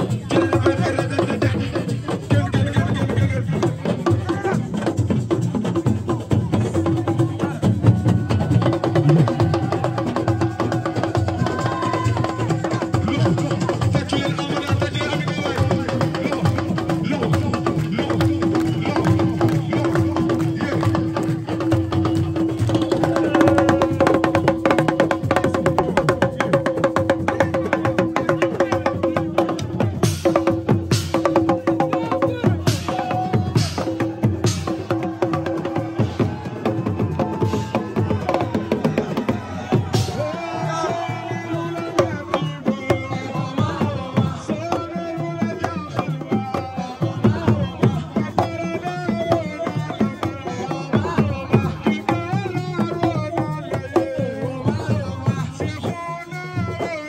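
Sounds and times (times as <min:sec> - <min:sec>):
fast dense drumming: 0:00.0 - 0:57.0
voices singing: 0:00.0 - 0:57.0.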